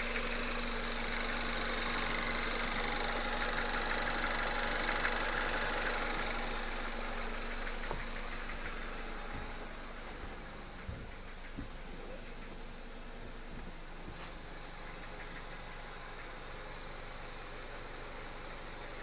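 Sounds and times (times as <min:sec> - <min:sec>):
car engine idling: 0:00.0 - 0:19.0
fast light engine knocking: 0:00.0 - 0:19.0.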